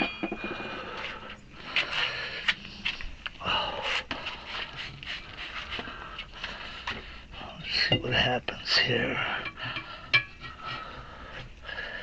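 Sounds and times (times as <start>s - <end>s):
man breathing hard: 0.4s - 4.8s, 9.2s - 12.0s
tire iron clicking and scraping: 9.1s - 11.6s.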